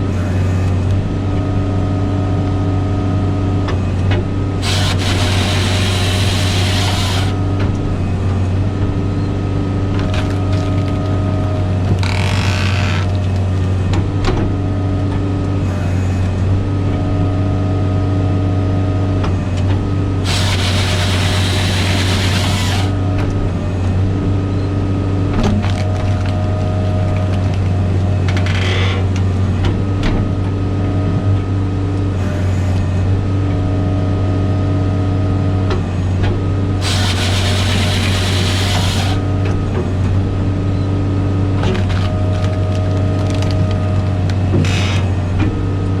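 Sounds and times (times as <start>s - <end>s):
diesel engine running: 0.0s - 46.0s
hydraulic whine: 3.8s - 13.2s, 19.5s - 24.7s, 36.7s - 40.9s
firewood processor harsh bursts: 4.6s - 7.5s, 20.2s - 23.0s, 36.8s - 39.4s.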